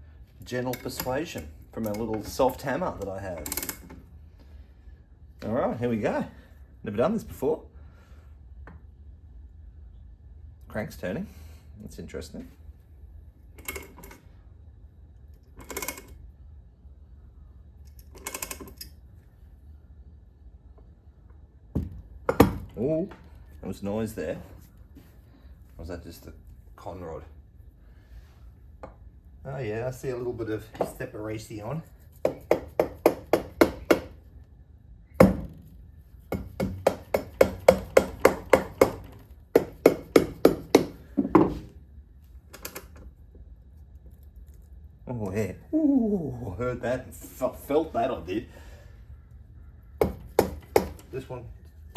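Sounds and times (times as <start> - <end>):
low steady hum: 0.0 - 51.9
hammer tapping on metal: 32.2 - 34.2, 36.3 - 41.6, 50.0 - 51.0.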